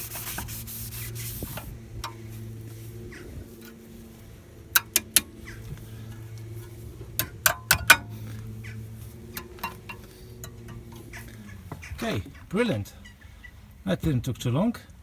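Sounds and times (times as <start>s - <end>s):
steady low hum: 0.0s - 14.0s
metal tools clicking: 4.7s - 8.4s, 9.3s - 11.2s.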